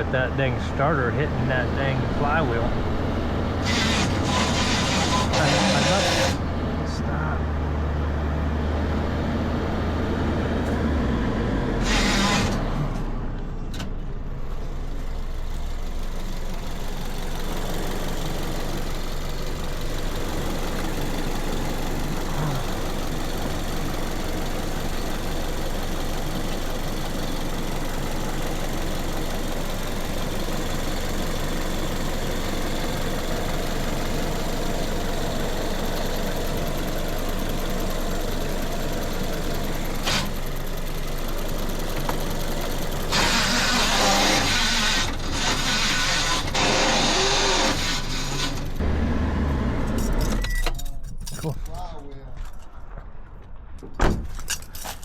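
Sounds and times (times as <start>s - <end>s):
vehicle engine running: 0.0s - 55.0s.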